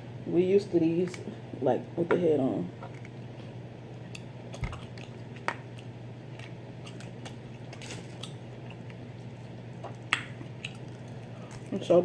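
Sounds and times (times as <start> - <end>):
steady low hum: 0.0 - 12.0
wet chewing and squishing: 3.4 - 11.8.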